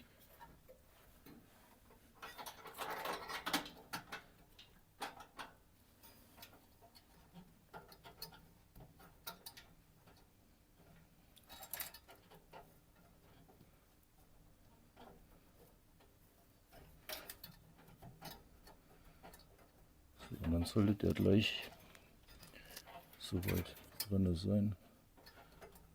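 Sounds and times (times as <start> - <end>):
metal parts clicking and scraping: 2.2 - 4.2, 11.4 - 12.7, 16.7 - 24.6.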